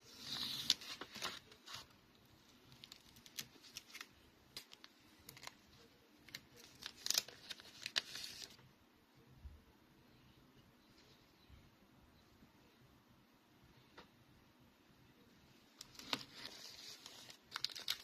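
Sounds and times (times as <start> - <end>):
packaging rustling and tearing: 2.6 - 8.6, 15.8 - 18.0.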